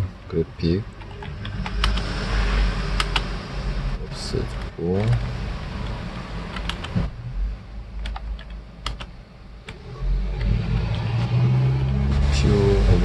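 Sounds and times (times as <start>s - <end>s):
low background hum: 0.0s - 13.0s
computer keyboard key clicks: 6.5s - 6.9s, 8.0s - 9.1s.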